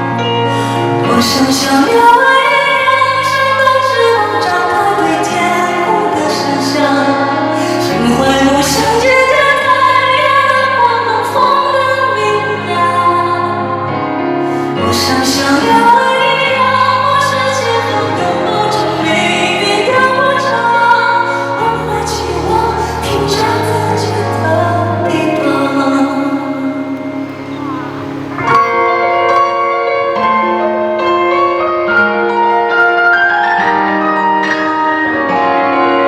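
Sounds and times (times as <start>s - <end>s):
live band playing pop: 21.6s - 36.0s.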